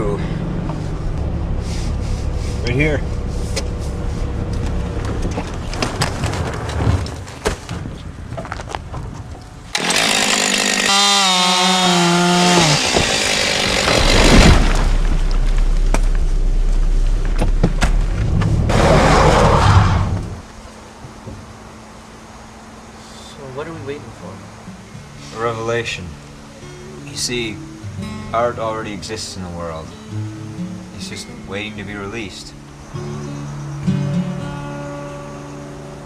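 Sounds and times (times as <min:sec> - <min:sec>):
chainsaw cutting wood: 0:09.7 - 0:15.1.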